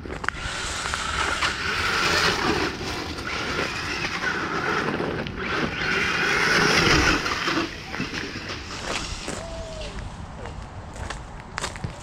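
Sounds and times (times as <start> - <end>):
rc car motor whirring: 0.1 - 9.4.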